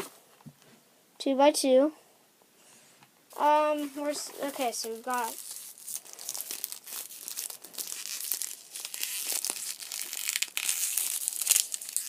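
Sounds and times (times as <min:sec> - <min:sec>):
plastic packaging crinkling and tearing: 0:03.3 - 0:12.0.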